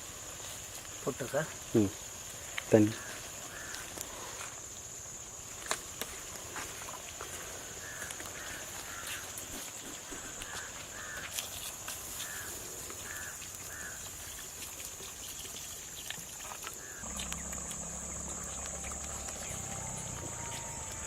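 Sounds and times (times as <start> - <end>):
crows cawing: 2.9 - 3.9, 7.8 - 9.3, 10.2 - 11.3, 12.2 - 14.0
high-pitched drone: 17.0 - 21.0
low hum: 17.0 - 21.0.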